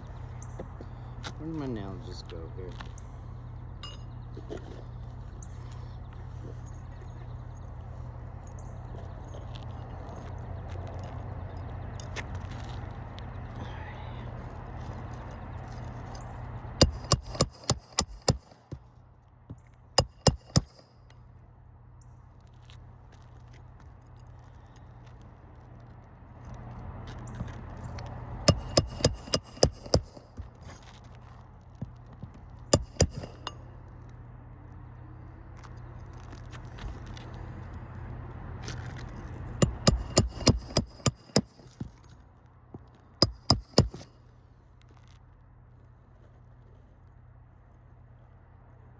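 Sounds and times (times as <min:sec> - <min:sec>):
hammer striking nail: 0:16.8 - 0:18.8, 0:20.0 - 0:20.8, 0:28.5 - 0:30.5, 0:32.7 - 0:33.6, 0:39.6 - 0:41.9, 0:43.2 - 0:44.1.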